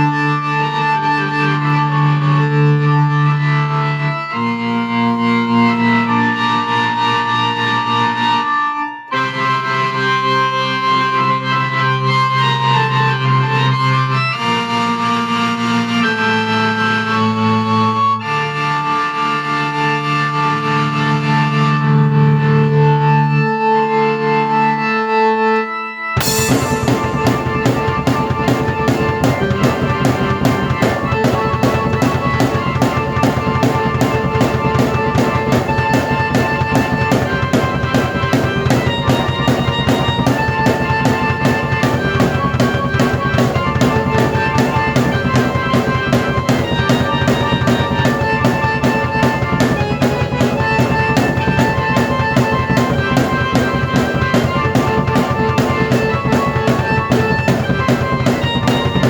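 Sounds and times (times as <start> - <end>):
keyboard chords and melody: 24.4 - 59.0
drum kit beat: 26.2 - 59.0.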